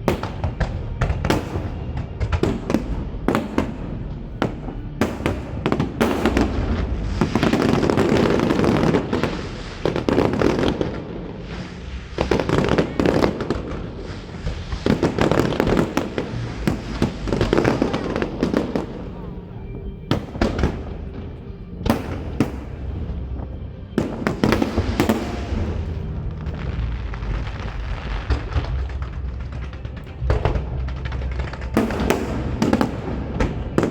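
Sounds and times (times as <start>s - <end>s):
firework crackling: 0.0s - 19.5s, 20.2s - 33.9s.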